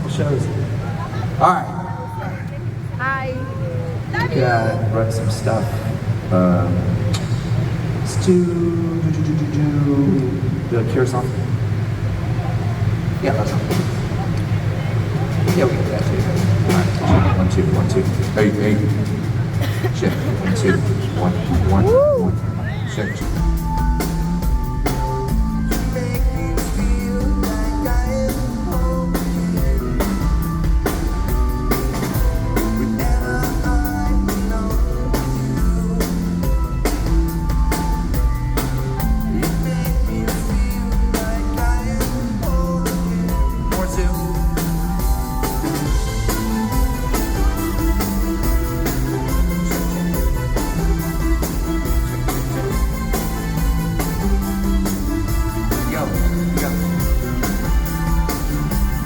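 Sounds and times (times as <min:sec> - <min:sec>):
keyboards: 0:00.0 - 0:59.0
drum kit: 0:13.4 - 0:59.0.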